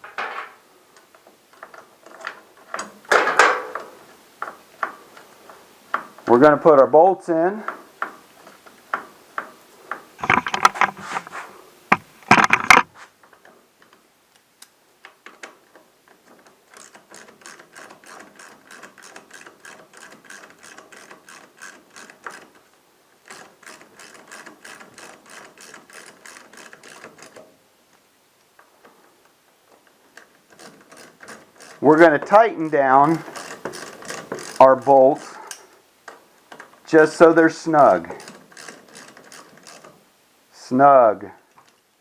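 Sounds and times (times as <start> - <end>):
loud metallic clanks: 3.1 - 4.0
ratchet wrench clicking: 16.7 - 22.6, 23.2 - 27.4, 30.2 - 31.8, 33.1 - 35.6, 38.1 - 39.9.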